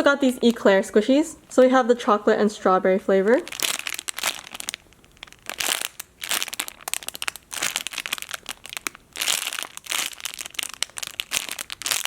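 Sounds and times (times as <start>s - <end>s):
plastic packaging crinkling: 3.4s - 12.0s.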